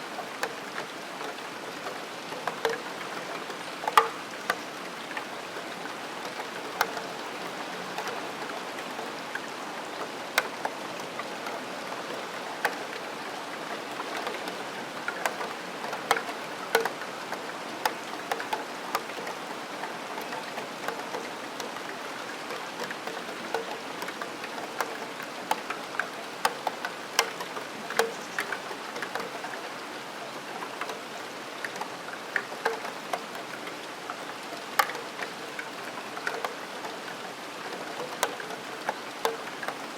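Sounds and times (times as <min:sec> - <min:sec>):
rain patter: 0:00.0 - 0:39.9
raindrops ticking on metal sill: 0:00.1 - 0:39.9.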